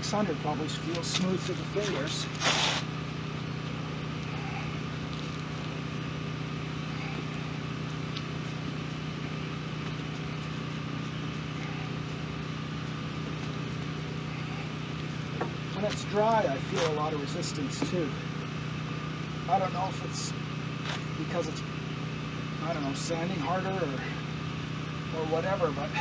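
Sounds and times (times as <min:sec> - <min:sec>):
low mechanical hum: 0:00.0 - 0:26.0
wet sandpaper rubbing plastic: 0:01.9 - 0:02.9.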